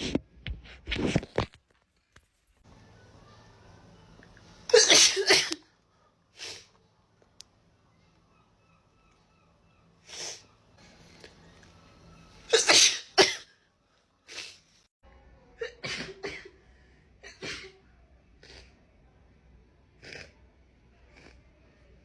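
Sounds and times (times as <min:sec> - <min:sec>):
woman sneezing: 0:04.7 - 0:05.6, 0:12.5 - 0:13.4.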